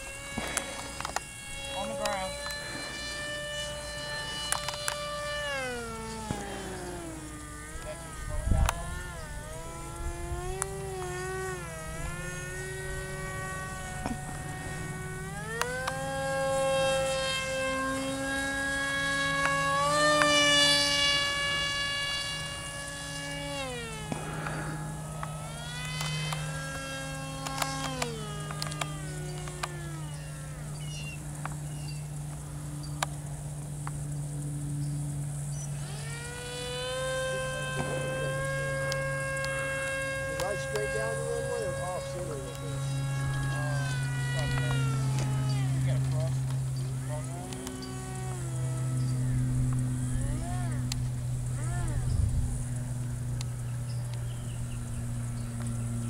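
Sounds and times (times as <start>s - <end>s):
electric motor and propeller whining: 0.0s - 56.0s
sharp clicks: 0.2s - 2.6s, 4.4s - 7.9s, 22.4s - 30.1s.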